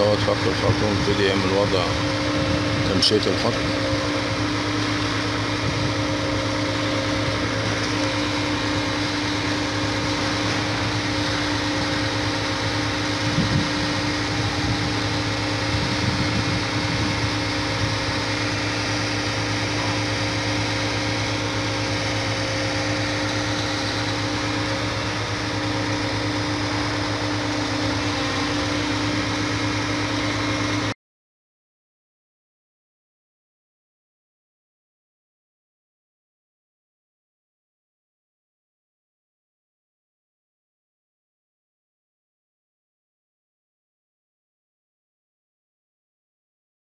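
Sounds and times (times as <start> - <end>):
concrete pump engine humming: 0.0 - 31.0.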